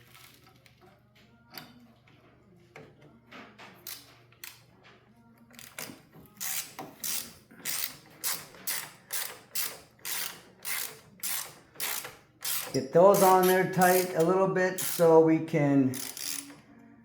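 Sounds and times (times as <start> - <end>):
ratchet wrench clicking: 3.8 - 4.6, 5.6 - 15.1, 15.9 - 16.6.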